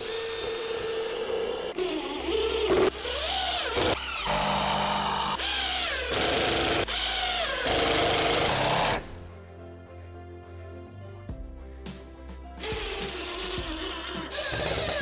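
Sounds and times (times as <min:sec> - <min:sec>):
power tool motor running: 0:00.0 - 0:09.3, 0:12.6 - 0:15.0.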